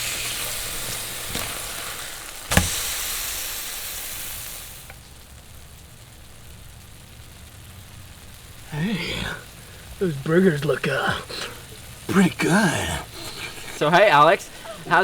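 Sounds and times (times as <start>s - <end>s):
burgers sizzling on a grill: 0.0s - 15.0s.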